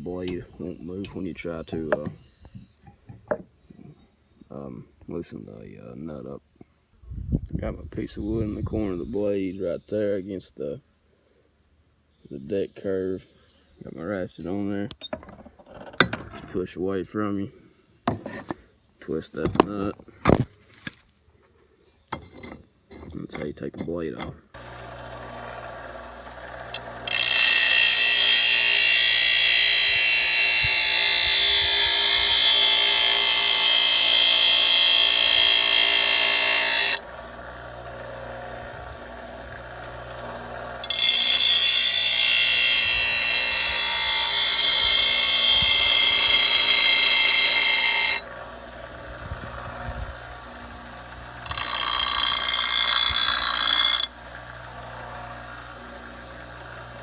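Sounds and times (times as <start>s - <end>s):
power grinder grinding metal: 0.0s - 2.8s, 24.6s - 57.0s.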